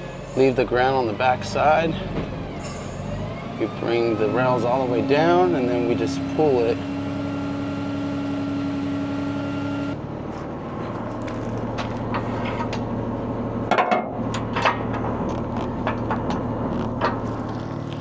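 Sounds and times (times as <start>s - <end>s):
hydraulic hoist whine: 0.0s - 18.0s
truck engine hum: 0.0s - 18.0s
metal clanks and clicks: 13.7s - 18.0s.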